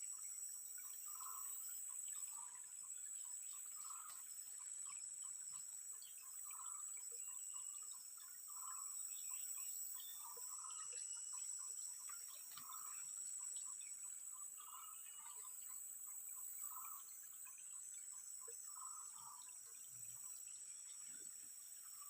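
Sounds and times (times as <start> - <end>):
fast ticking insect calls: 0.0 - 22.0
bird chirps: 6.0 - 22.0.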